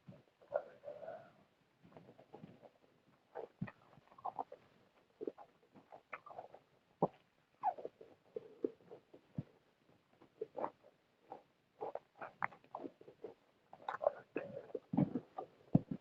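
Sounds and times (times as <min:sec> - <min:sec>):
person chewing food: 0:05.2 - 0:09.5, 0:10.3 - 0:16.0.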